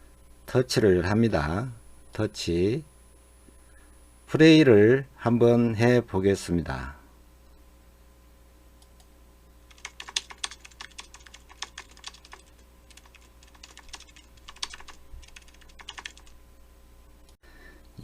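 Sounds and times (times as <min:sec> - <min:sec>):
computer keyboard typing: 0:09.7 - 0:16.4.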